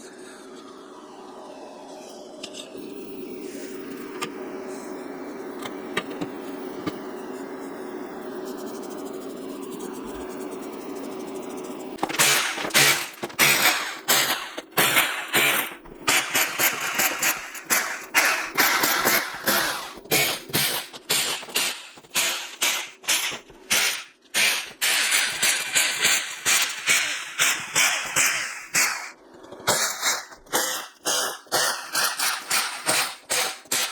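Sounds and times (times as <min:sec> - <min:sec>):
rasping strokes of a hand tool: 0:12.0 - 0:33.9.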